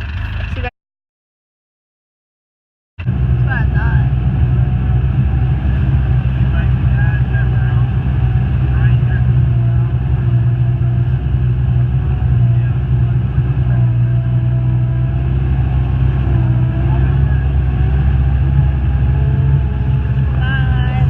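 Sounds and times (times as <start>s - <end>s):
vehicle motor rumbling: 0.0s - 0.7s, 3.0s - 21.0s.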